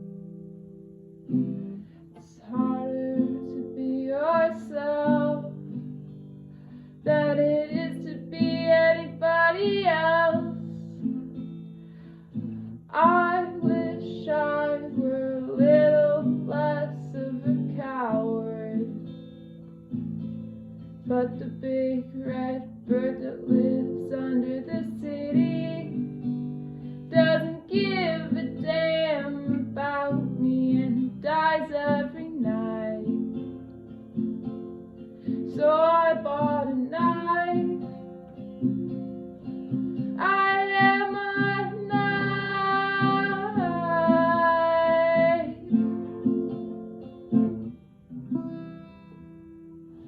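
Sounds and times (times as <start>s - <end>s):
acoustic guitar strumming: 0.0s - 50.0s
woman singing: 2.1s - 6.1s, 7.0s - 11.5s, 12.9s - 19.2s, 21.0s - 33.7s, 35.2s - 39.1s, 40.0s - 46.9s.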